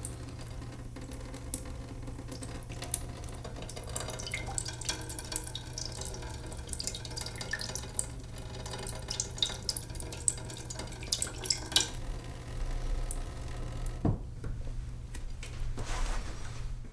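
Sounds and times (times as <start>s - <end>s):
water dripping and trickling: 1.5s - 14.0s.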